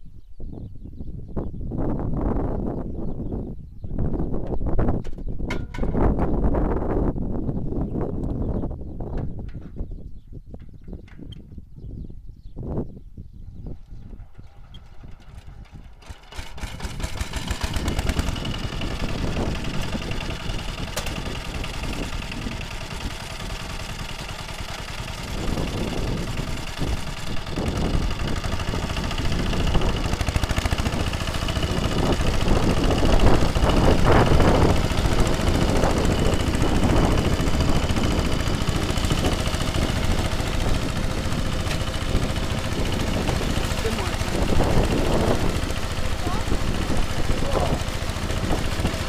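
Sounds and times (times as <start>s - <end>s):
tractor engine running under load: 13.4s - 49.0s
rotary tiller churning soil: 13.7s - 49.0s.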